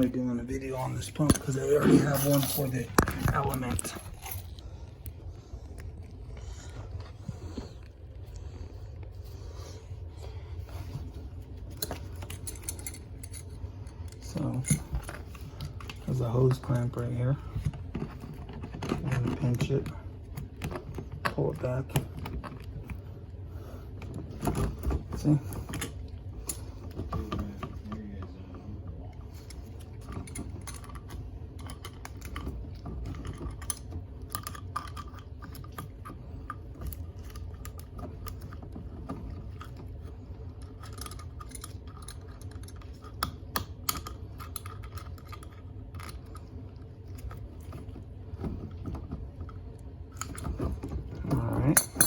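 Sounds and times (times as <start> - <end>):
plastic parts clicking and rattling: 11.7 - 23.0, 29.4 - 46.4.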